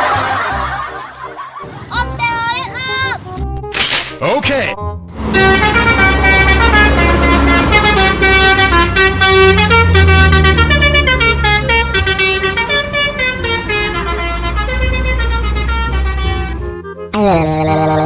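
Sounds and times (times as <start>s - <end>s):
bus musical horn melody: 5.1s - 17.2s
bus engine rumble: 5.1s - 18.0s.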